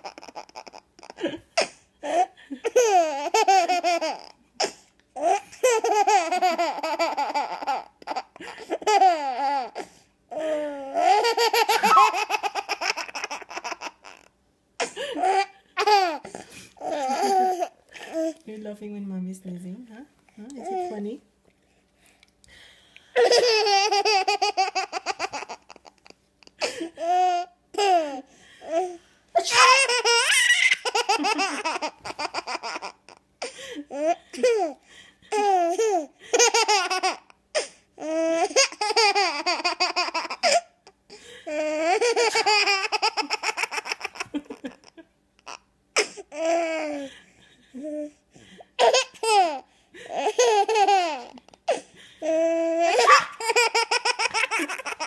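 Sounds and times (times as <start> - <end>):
baby laughing: 0.0 - 18.3, 23.2 - 33.2, 33.9 - 37.4, 38.0 - 40.7, 41.5 - 48.1, 48.8 - 55.0
woman sneezing: 53.0 - 53.4.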